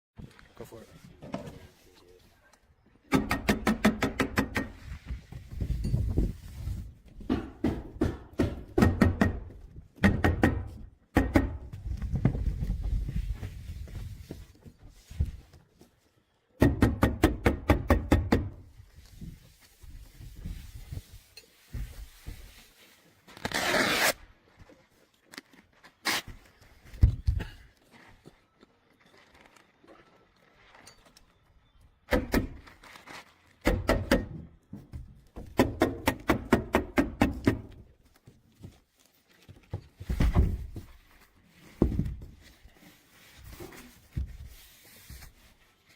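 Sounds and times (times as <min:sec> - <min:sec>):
scattered thuds and knocks: 0:07.2 - 0:12.8, 0:39.6 - 0:41.0, 0:41.8 - 0:42.4.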